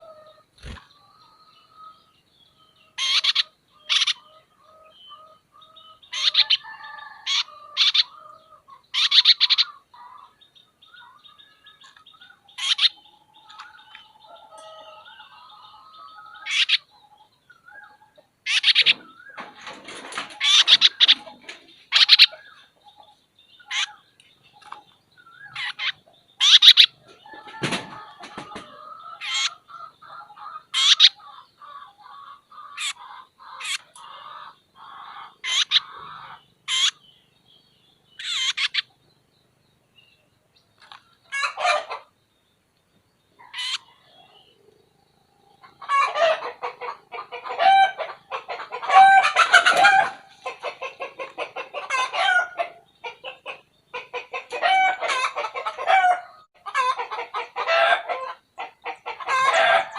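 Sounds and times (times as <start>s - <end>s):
bird high-pitched calls: 0.0s - 37.4s, 38.0s - 39.3s, 40.8s - 42.2s, 43.3s - 44.8s, 45.4s - 59.9s.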